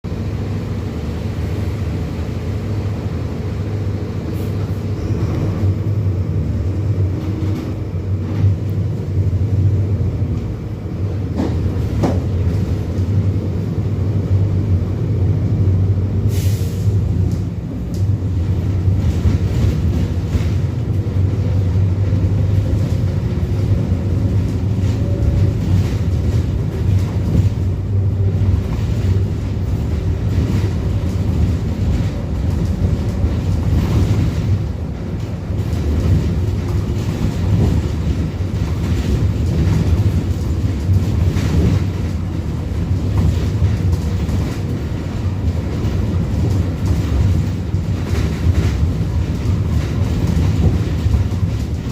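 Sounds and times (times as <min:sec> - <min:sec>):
diesel bus engine droning: 0:00.0 - 0:51.9.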